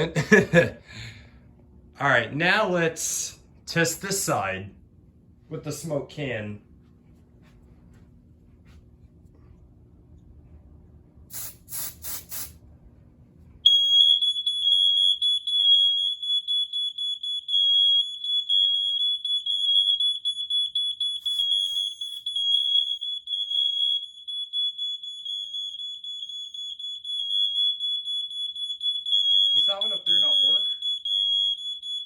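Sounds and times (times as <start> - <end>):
aerosol spray hisses: 11.3 - 12.6
shrill smoke alarm tone: 13.6 - 32.0.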